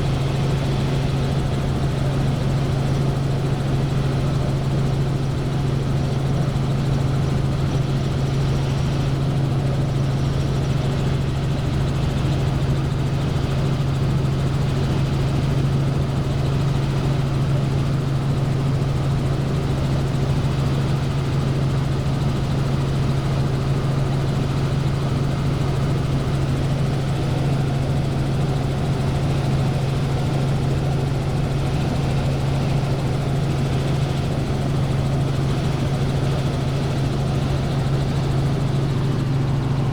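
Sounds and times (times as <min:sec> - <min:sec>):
helicopter engine and rotors drone: 0:00.0 - 0:39.9.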